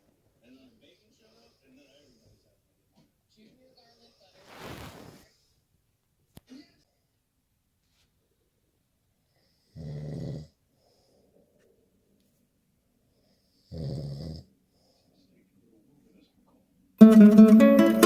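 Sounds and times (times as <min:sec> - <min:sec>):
man snoring: 0:09.8 - 0:10.5, 0:13.7 - 0:14.4.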